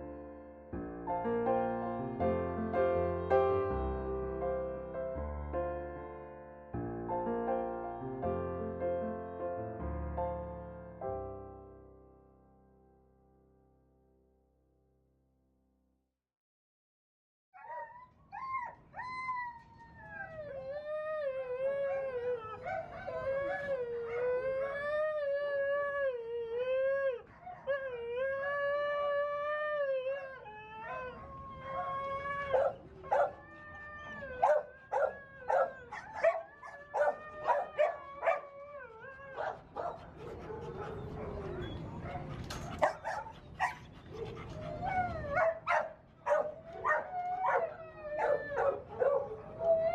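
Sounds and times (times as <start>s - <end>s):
dog howling: 17.6s - 49.9s
dog yipping barks: 39.4s - 41.0s, 42.0s - 43.8s, 45.4s - 47.6s.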